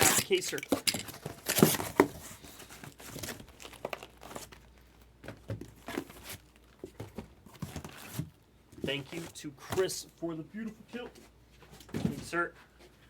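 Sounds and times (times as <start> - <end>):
plastic wrapping crinkling and tearing: 0.0 - 5.1.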